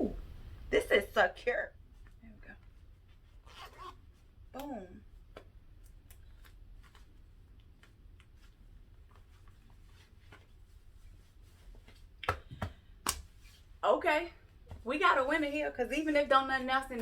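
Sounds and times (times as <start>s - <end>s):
low room hum: 0.0s - 17.0s
clothing rustling: 5.2s - 12.2s.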